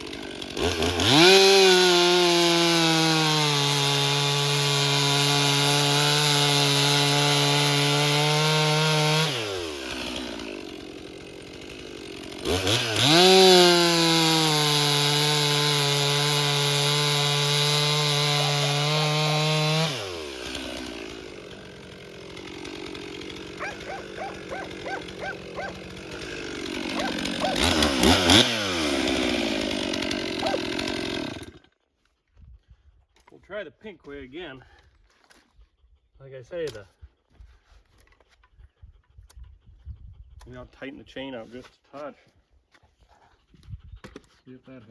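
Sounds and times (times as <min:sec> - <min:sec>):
chainsaw cutting log: 0:00.0 - 0:31.8.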